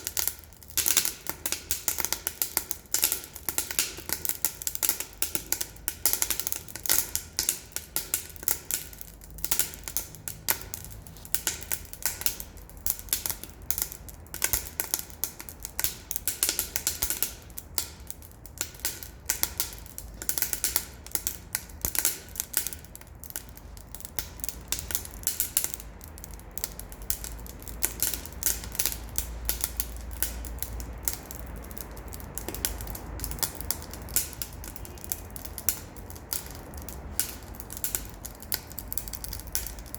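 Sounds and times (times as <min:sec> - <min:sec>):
low rumble of flames: 0:00.0 - 0:39.9
wood fire crackling and popping: 0:00.0 - 0:39.9.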